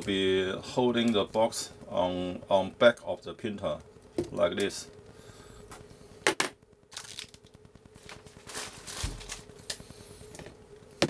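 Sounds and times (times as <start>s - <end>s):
faint steady hum: 0.0s - 11.0s
rustles and light knocks: 8.1s - 9.5s.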